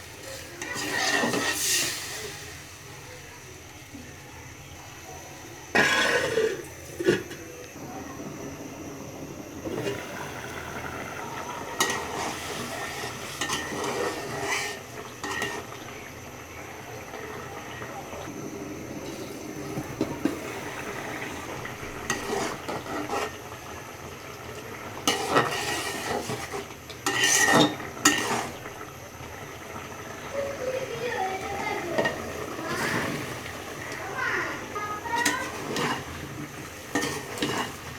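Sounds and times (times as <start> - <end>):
low steady sizzle: 0.0 - 37.9
spoon scraping in a pan: 0.2 - 2.6, 5.7 - 7.4, 11.8 - 15.7, 22.1 - 23.4, 25.0 - 28.6, 35.0 - 37.9.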